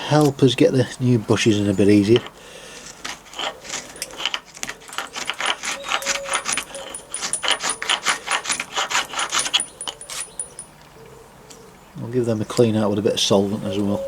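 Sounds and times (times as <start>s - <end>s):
hand tool scraping metal: 1.8s - 10.8s.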